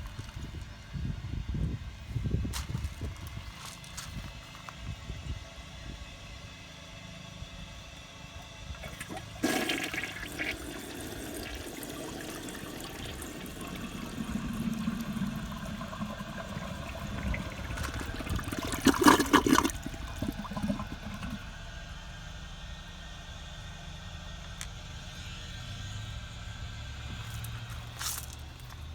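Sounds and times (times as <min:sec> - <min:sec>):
toilet flushing: 0:08.7 - 0:22.0.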